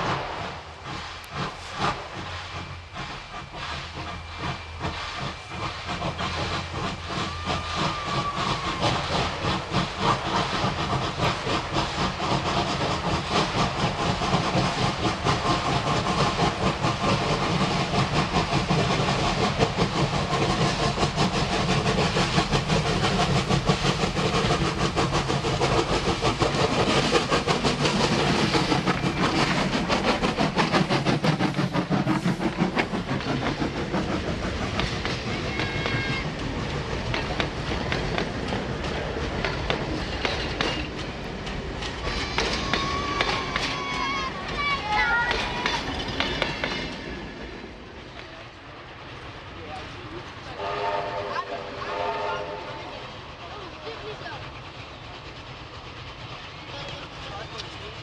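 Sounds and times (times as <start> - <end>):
hissing steam: 0.0 - 58.0
steam locomotive exhaust beats: 0.0 - 58.0
faint train whistle: 50.6 - 53.0.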